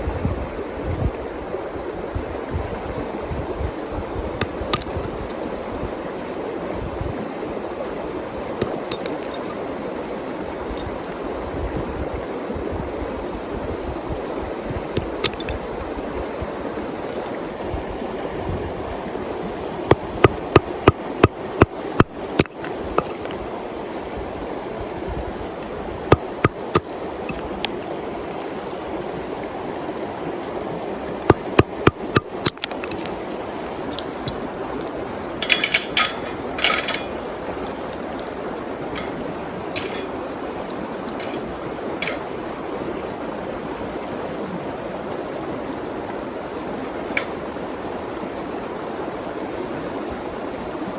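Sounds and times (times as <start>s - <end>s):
river flowing over stones: 0.0s - 50.9s
metallic clinks rattling: 8.8s - 9.6s, 26.7s - 29.0s, 31.9s - 42.3s
sharp knocks: 31.3s - 33.1s.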